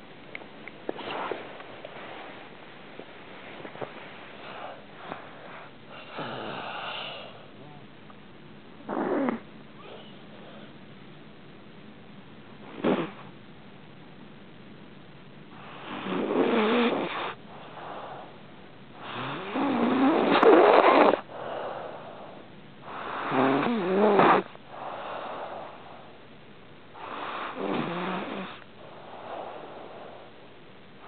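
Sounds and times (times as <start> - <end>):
soft breath: 0.9 - 7.8, 9.8 - 10.9, 17.1 - 23.5, 24.3 - 31.0
pet snoring: 4.4 - 7.3, 8.8 - 10.6, 12.6 - 13.3, 15.5 - 18.4, 19.0 - 26.2, 27.0 - 30.3.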